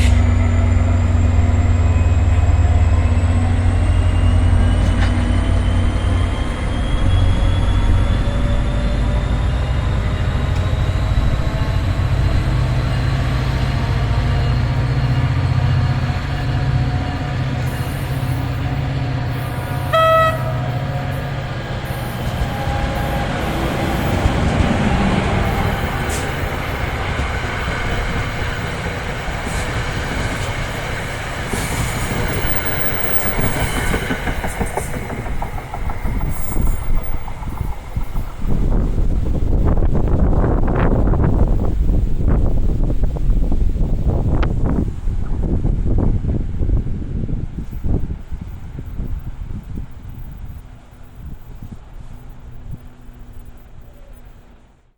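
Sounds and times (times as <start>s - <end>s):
train rumbling and whining: 0.0s - 54.9s
train horn toot: 19.2s - 26.3s
train wheels clattering: 21.6s - 40.5s.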